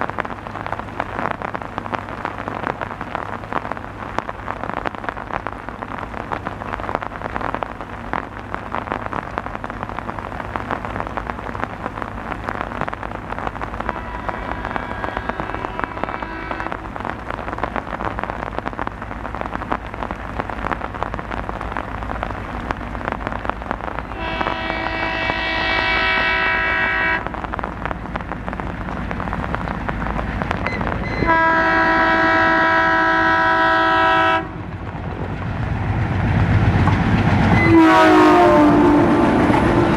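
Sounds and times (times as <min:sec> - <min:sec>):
heavy rain: 0:00.0 - 0:39.9
locomotive horn blowing: 0:13.8 - 0:17.0, 0:24.1 - 0:27.3, 0:31.0 - 0:34.6, 0:37.6 - 0:39.6.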